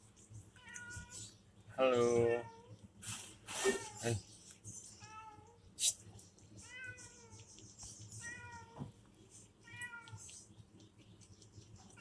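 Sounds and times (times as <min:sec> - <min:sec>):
cat meowing: 0:09.6 - 0:10.3.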